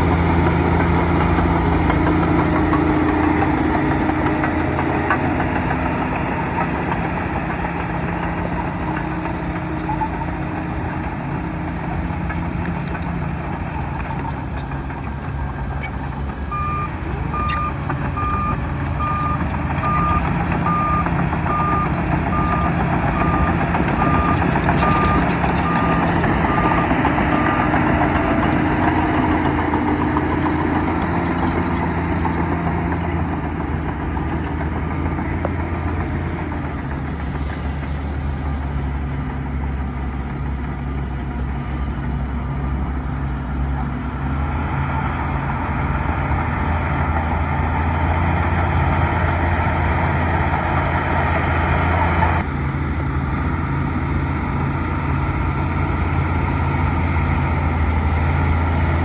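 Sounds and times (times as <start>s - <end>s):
bulldozer diesel engine running: 0.0s - 59.0s
reverse alarm beeping: 16.5s - 26.9s.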